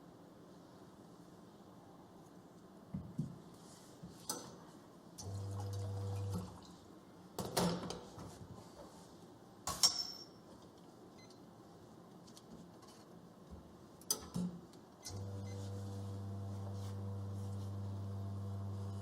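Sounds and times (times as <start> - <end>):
electric hum: 15.1 - 19.0.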